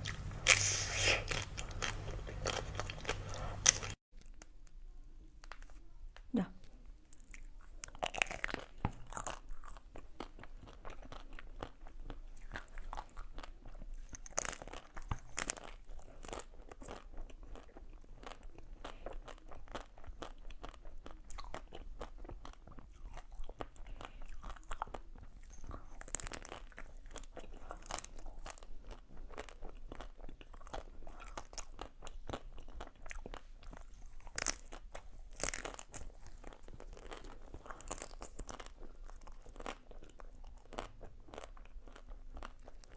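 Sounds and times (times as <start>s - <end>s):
crunchy ice cream bites and chewing: 0.0s - 4.8s, 7.2s - 42.9s.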